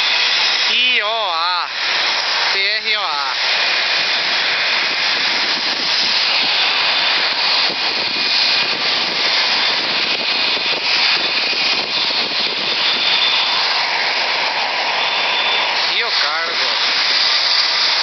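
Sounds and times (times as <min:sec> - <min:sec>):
jet engines roaring: 0:00.0 - 0:18.0
faint high whine: 0:09.0 - 0:18.0.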